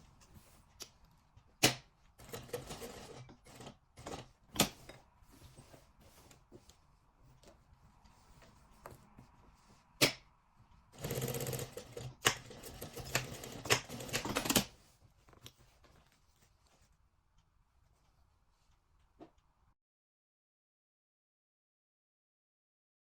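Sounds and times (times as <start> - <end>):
sewing machine stitching: 2.2 - 5.0, 11.0 - 14.8.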